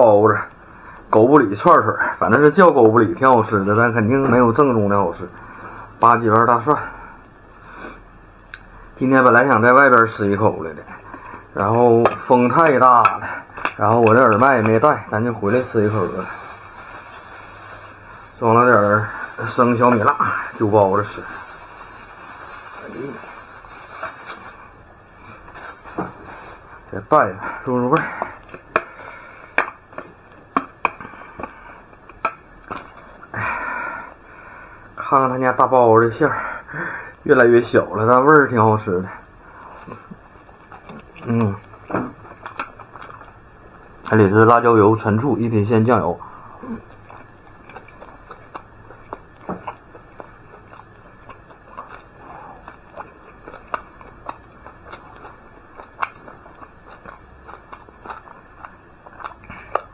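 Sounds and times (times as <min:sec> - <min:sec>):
mouth clicks and smacks: 0:39.8 - 0:44.2, 0:46.8 - 0:59.9
wet chewing and biting: 0:39.8 - 0:44.2, 0:46.8 - 0:59.9.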